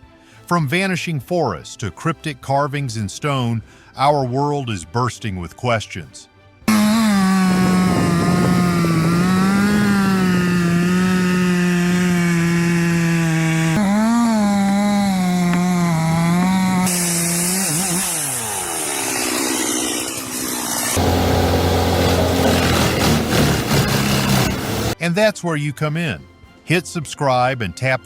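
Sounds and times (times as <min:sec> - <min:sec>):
chainsaw running: 0:06.7 - 0:25.0.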